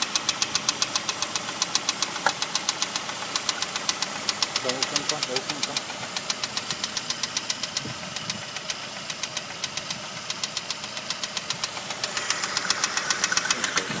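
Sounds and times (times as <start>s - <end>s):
car engine running: 0.0s - 14.0s
rapid engine knocking: 0.0s - 14.0s.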